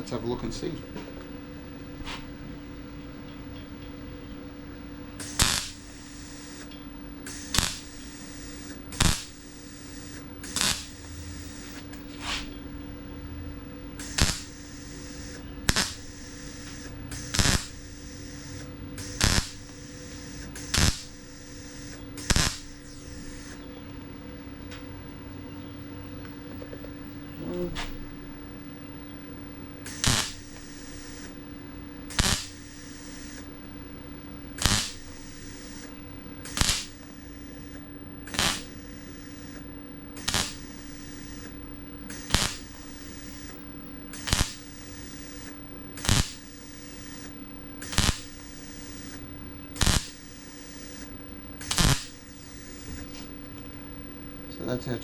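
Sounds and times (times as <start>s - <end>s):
steady hum: 0.0s - 55.0s
welder tack weld bursts: 5.2s - 12.5s, 13.9s - 23.6s, 29.8s - 33.7s, 34.4s - 53.2s.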